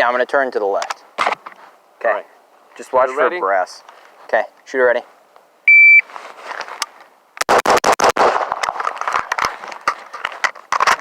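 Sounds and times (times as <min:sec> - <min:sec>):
shot timer beep: 0:05.7 - 0:06.0
rapid gunshots: 0:07.4 - 0:08.6.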